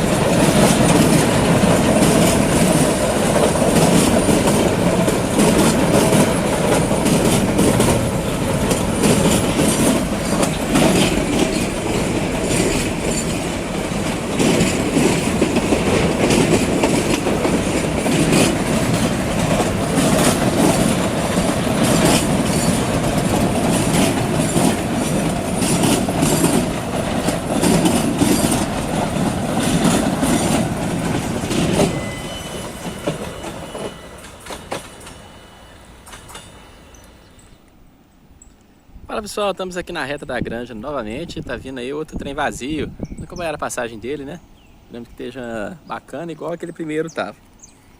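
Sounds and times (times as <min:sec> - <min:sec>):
freight wagon wheels clacking on rails: 0:00.0 - 0:37.6.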